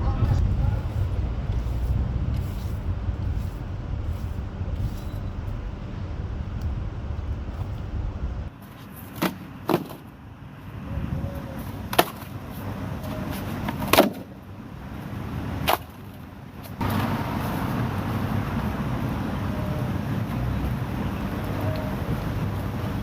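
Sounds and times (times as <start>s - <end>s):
loud steady rushing noise: 0.0s - 8.5s
low steady rumble: 0.0s - 8.5s.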